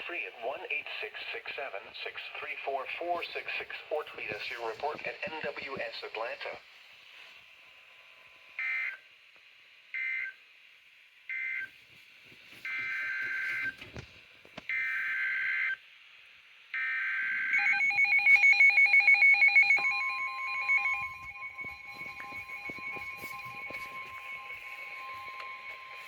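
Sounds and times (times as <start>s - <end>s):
steady warning tone: 17.2s - 26.0s
rapidly pulsing electronic beep: 17.6s - 26.0s.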